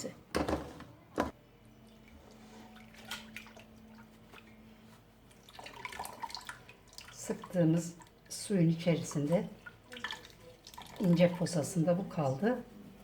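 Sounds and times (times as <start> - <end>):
juice dripping and trickling: 5.3 - 7.4, 9.6 - 11.2.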